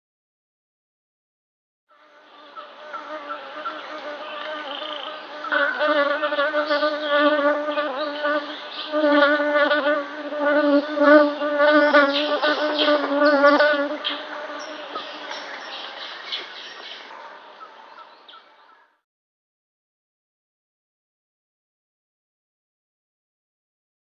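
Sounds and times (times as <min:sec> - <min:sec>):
bee buzzing in flight: 0:01.9 - 0:15.2.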